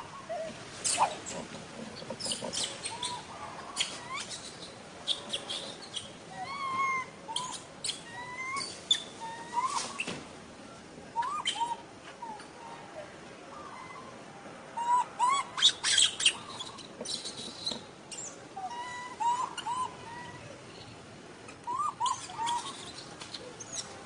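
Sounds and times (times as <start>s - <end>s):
baby monkey squeaky coo calls: 0.2s - 1.4s, 2.2s - 10.1s, 11.2s - 12.5s, 14.8s - 20.4s, 21.5s - 23.9s.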